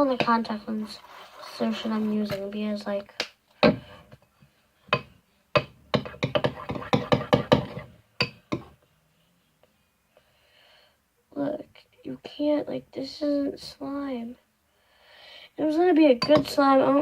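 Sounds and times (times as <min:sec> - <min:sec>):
rapid hard knocks and clicks: 0:05.0 - 0:07.8.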